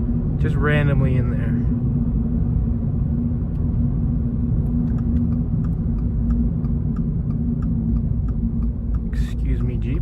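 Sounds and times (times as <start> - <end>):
car engine and road noise: 0.0 - 10.0
light ticks: 4.8 - 9.9.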